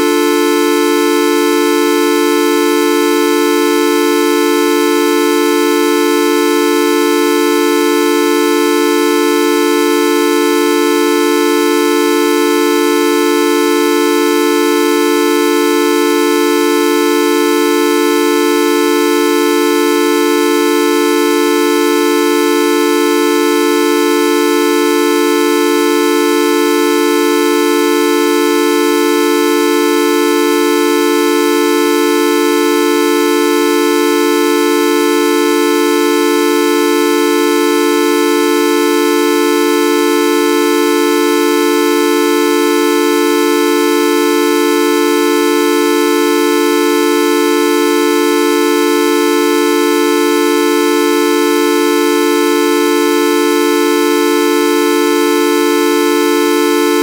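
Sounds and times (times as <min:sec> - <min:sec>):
horn-like buzzing tone: 0:00.0 - 0:43.4, 0:46.6 - 0:57.0.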